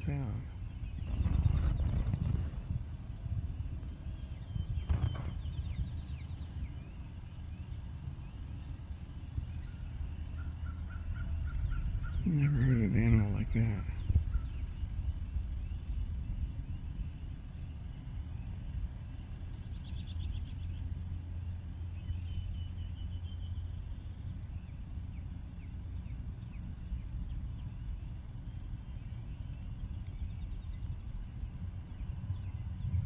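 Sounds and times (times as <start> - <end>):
steady low rumble: 0.0 - 33.0
faint high chirping calls: 3.5 - 33.0.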